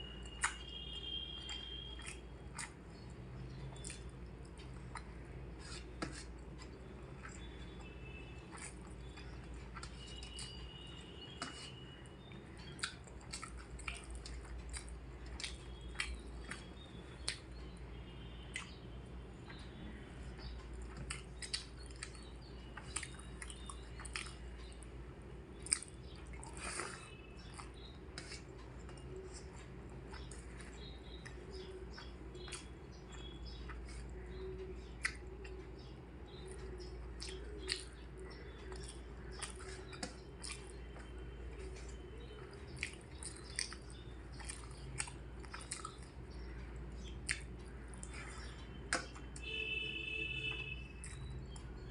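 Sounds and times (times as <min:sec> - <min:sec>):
mouth clicks and smacks: 0:00.2 - 0:00.7, 0:12.6 - 0:17.6, 0:18.4 - 0:18.8, 0:20.4 - 0:24.8, 0:25.5 - 0:34.2, 0:34.8 - 0:49.5, 0:50.5 - 0:51.8
person chewing food: 0:00.2 - 0:17.8, 0:18.4 - 0:18.8, 0:19.4 - 0:51.9.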